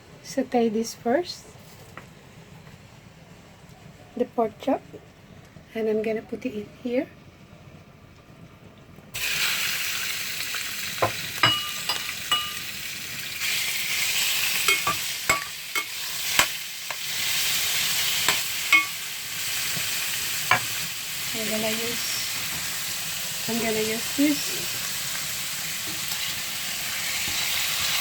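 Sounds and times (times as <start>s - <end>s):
meat sizzling in a frying pan: 9.2s - 28.0s.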